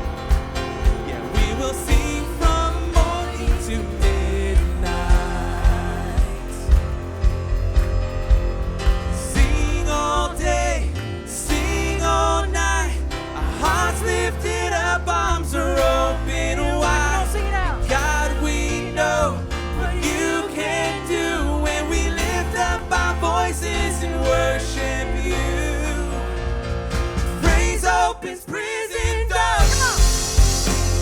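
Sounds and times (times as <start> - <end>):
live band playing: 0.0 - 16.4, 26.2 - 28.1, 29.6 - 31.0
person singing: 0.0 - 31.0.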